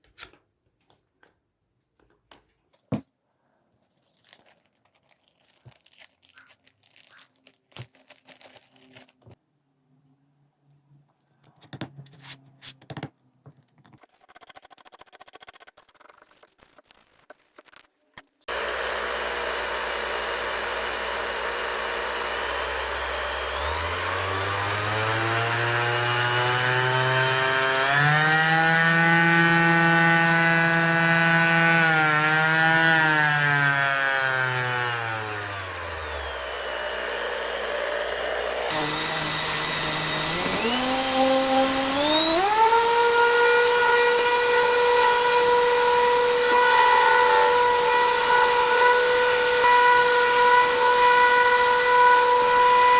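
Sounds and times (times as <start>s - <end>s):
orbital sander motor running: 18.5s - 52.9s.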